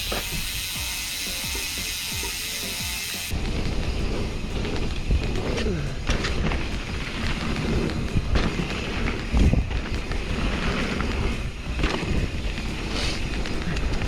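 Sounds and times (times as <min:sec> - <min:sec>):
bike freehub buzzing: 0:00.0 - 0:14.0
trail rumble: 0:03.3 - 0:14.0
wind noise on microphone: 0:03.3 - 0:14.0.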